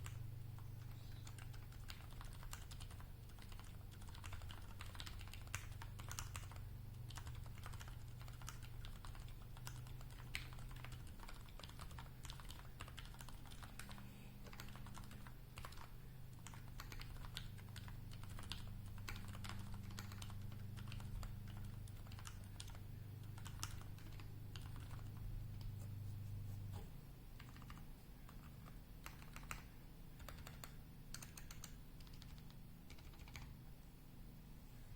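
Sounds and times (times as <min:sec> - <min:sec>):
typing on mechanical keyboard: 0:00.0 - 0:25.6, 0:27.4 - 0:33.6
low steady hum: 0:00.0 - 0:34.9.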